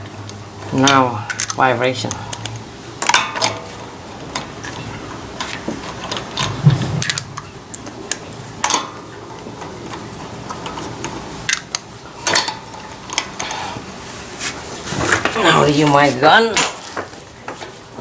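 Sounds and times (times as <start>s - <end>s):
metallic clicks and clanks of tools: 0.8s - 3.7s, 5.4s - 9.7s, 10.5s - 13.6s.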